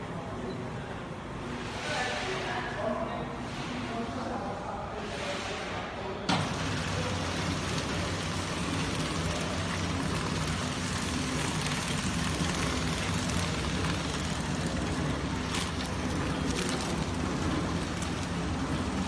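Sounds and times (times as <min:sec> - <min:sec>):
packing machine humming: 0:06.3 - 0:19.0.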